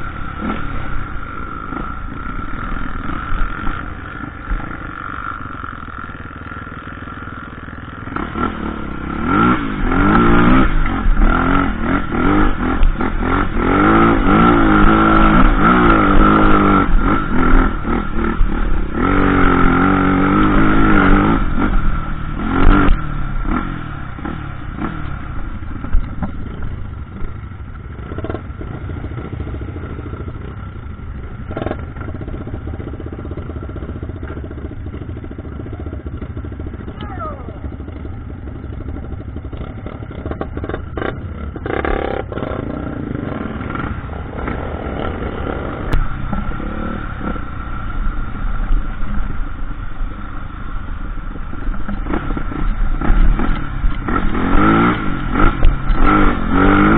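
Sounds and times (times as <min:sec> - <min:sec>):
dirt bike engine revving: 0:00.0 - 0:48.0, 0:51.8 - 0:56.9.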